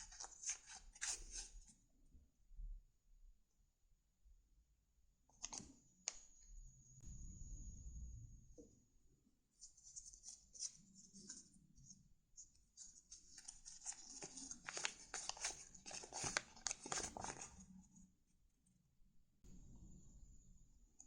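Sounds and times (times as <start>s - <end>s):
paper rustling and crinkling: 0.0s - 1.5s, 12.7s - 17.6s.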